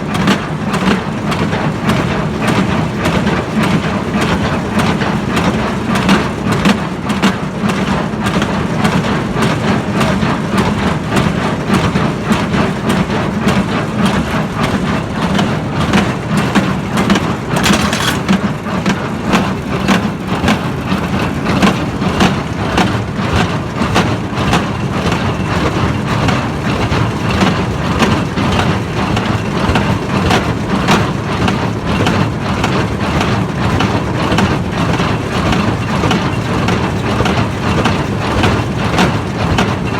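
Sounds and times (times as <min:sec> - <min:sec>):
baler mechanism knocking: 0:17.1 - 0:18.4.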